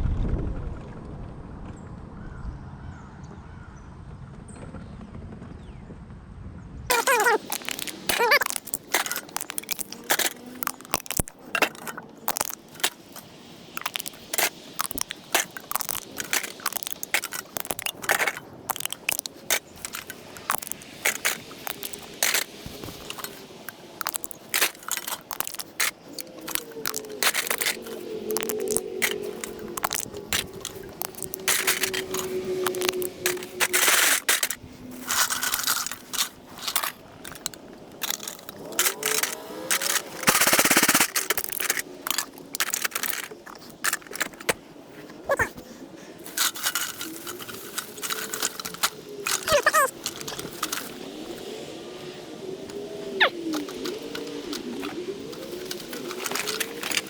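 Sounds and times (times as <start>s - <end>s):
vehicle rumbling: 0.7s - 57.0s
scrap metal clattering: 6.9s - 51.0s.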